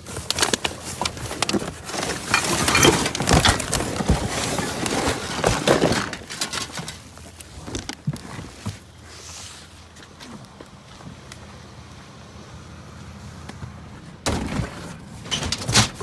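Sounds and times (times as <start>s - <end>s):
junk clattering in dumpster: 0.0s - 9.4s, 13.3s - 16.0s.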